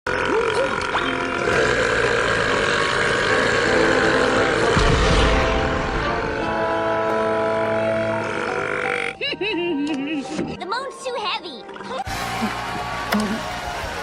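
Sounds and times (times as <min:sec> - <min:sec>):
cartoon belch: 0:00.1 - 0:05.5, 0:07.5 - 0:09.2.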